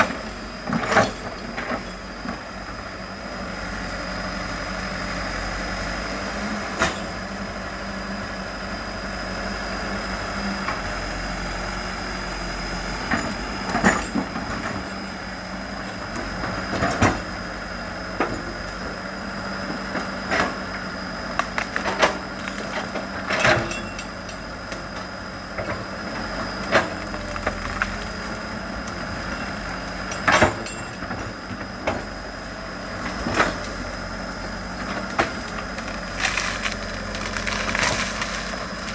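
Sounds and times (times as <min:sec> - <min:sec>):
excavator diesel engine: 0:00.0 - 0:38.9
wood snapping: 0:35.2 - 0:38.9.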